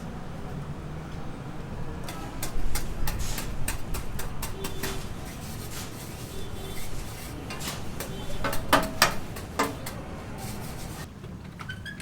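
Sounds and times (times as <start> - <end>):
sharp clicks and knocks: 2.0 - 5.2, 7.3 - 10.2.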